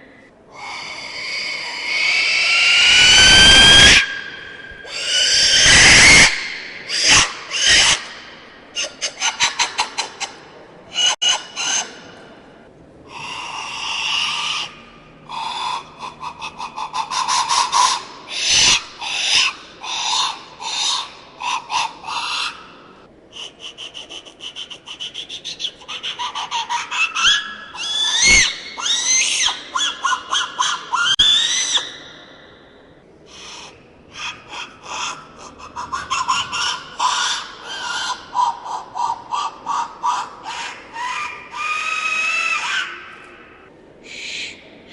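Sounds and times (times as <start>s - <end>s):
clay whistles screeching blasts: 0.6s - 8.2s.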